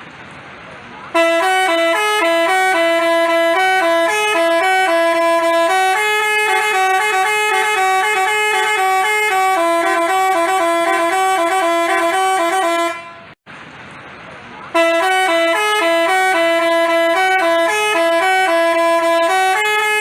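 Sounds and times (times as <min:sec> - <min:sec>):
multi-tone bus horn tune: 0:01.1 - 0:13.4, 0:14.7 - 0:20.0.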